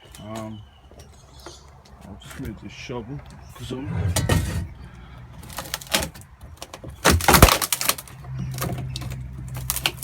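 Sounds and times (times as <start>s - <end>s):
shovel and timber knocking and scraping: 3.6s - 6.2s
loud timber clatter: 3.8s - 6.2s.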